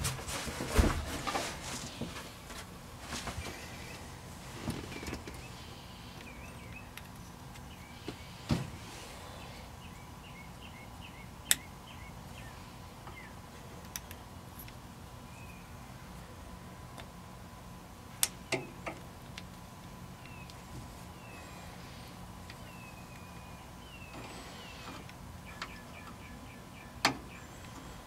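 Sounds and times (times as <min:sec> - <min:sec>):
steady low hum: 0:00.0 - 0:28.0
faint chirping: 0:20.2 - 0:28.0.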